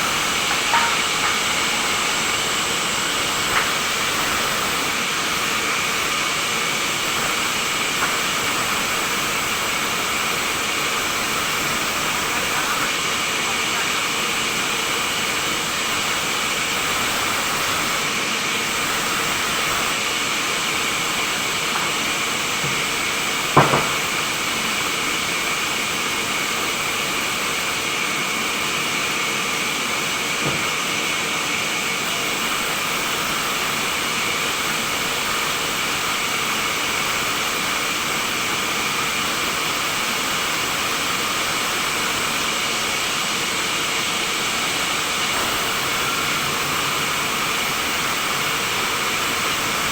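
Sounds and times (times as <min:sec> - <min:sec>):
sawmill machinery running: 0:00.0 - 0:49.9
sharp knock: 0:23.6 - 0:24.0.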